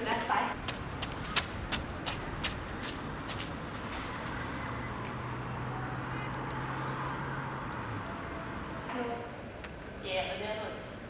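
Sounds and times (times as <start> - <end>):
road noise: 0.0 - 11.0
footsteps clicking on hard ground: 0.6 - 4.4.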